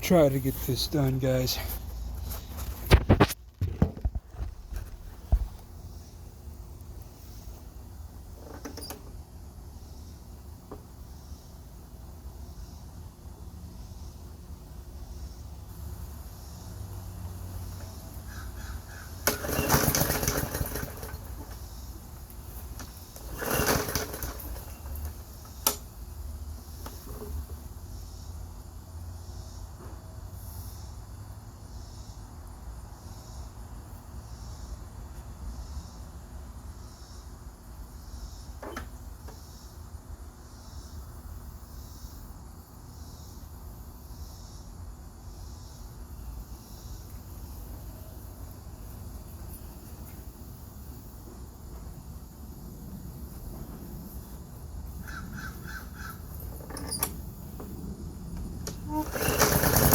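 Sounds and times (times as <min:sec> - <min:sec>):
bird calling: 0:18.2 - 0:19.3, 0:55.0 - 0:56.3.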